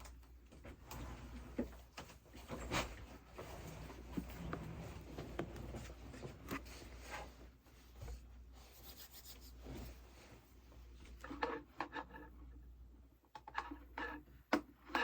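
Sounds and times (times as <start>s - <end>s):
soft rubbing and scraping: 0.8s - 12.4s.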